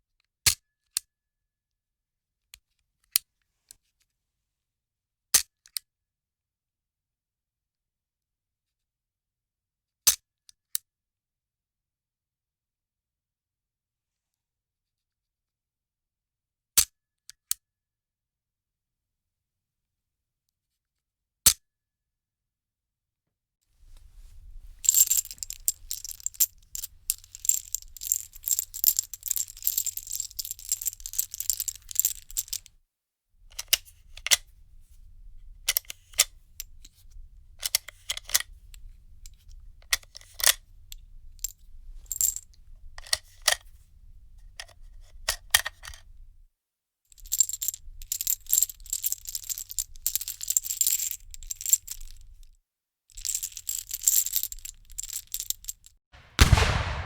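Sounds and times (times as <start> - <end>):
small metal pieces clinking: 24.8 - 32.6.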